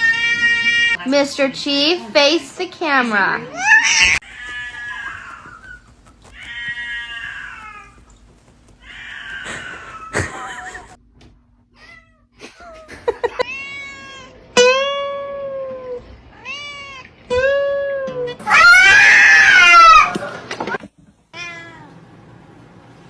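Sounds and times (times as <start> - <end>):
cats meowing: 3.5 - 10.9, 11.8 - 14.4, 16.3 - 17.2.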